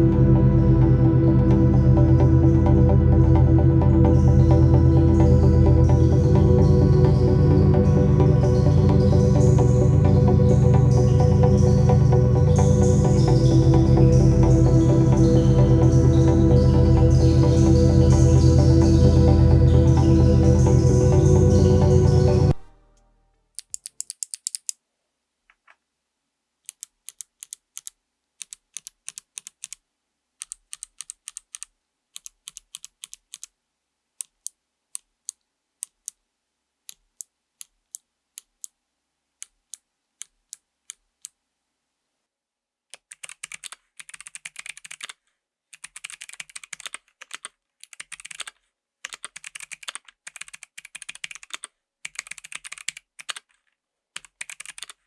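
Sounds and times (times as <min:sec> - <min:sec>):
clicky mechanical keyboard typing: 0:30.4 - 0:33.5, 0:43.0 - 0:45.2, 0:45.8 - 0:53.6, 0:54.2 - 0:55.0.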